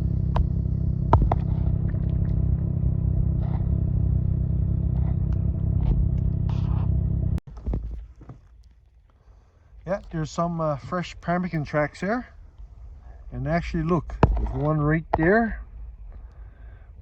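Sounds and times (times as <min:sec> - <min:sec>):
snowmobile engine running: 0:00.0 - 0:07.4
low quiet engine sound: 0:00.0 - 0:17.0.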